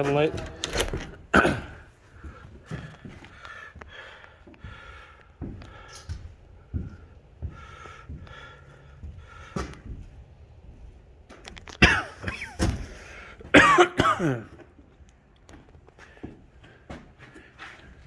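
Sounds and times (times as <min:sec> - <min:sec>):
footsteps: 0:00.0 - 0:13.5, 0:14.5 - 0:18.0
person coughing: 0:01.3 - 0:01.9, 0:11.8 - 0:12.7, 0:13.5 - 0:14.6.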